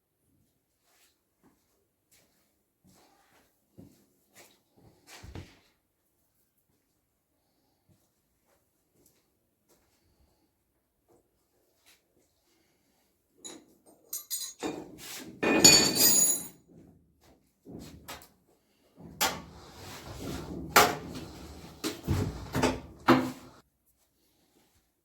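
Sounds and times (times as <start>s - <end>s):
hard parts clattering: 13.4s - 16.6s.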